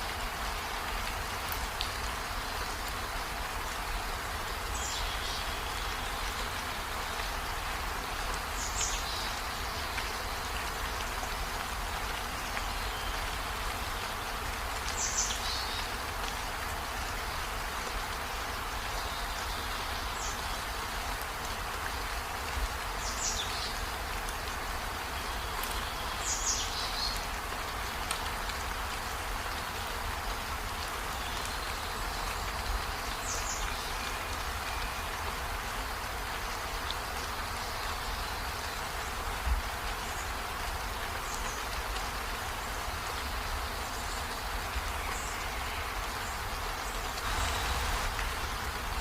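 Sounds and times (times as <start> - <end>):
steady rain-like hiss: 0.0 - 49.0.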